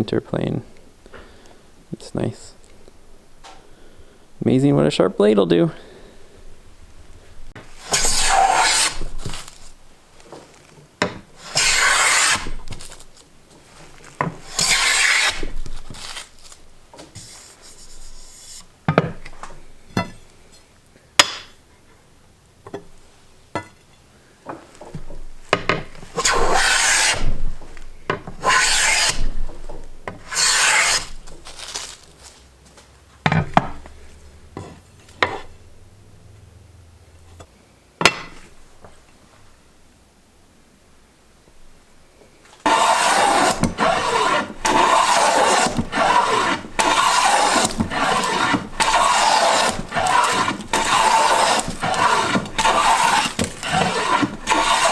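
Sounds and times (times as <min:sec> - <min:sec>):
hand plane rasping on wood: 0:07.8 - 0:09.6, 0:11.4 - 0:12.9, 0:14.4 - 0:16.3, 0:26.1 - 0:27.4, 0:28.4 - 0:29.4, 0:30.2 - 0:31.2, 0:42.7 - 0:54.9.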